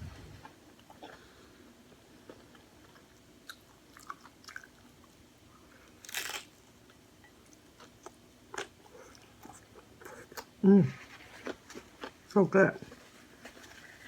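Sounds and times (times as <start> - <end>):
taco shell crunch: 5.8 - 6.6.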